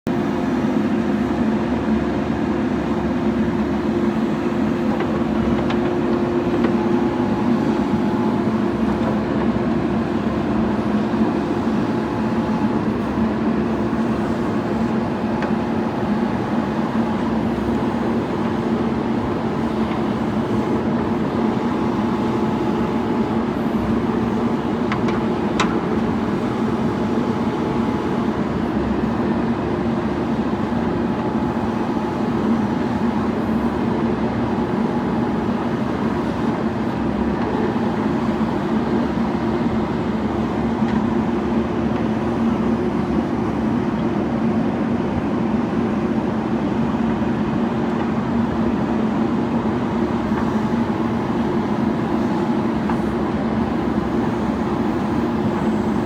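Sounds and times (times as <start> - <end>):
backhoe diesel engine running: 0.1 - 56.0.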